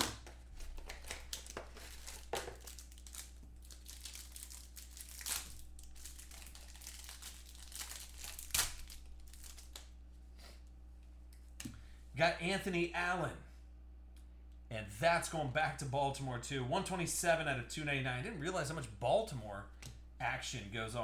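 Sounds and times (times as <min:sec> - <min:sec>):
packaging crinkling and tearing: 0:00.0 - 0:10.0.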